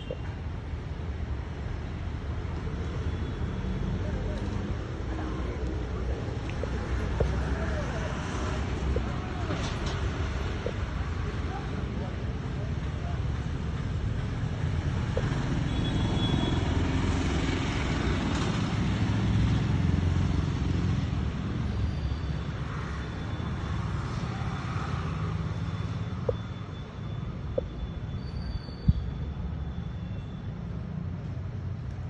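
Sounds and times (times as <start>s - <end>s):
motor traffic rumble: 0.0s - 32.0s.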